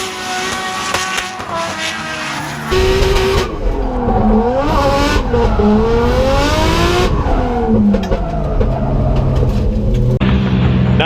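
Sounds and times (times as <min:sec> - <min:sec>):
tyre squeal: 0:00.0 - 0:03.4
car engine revving hard: 0:00.0 - 0:09.6.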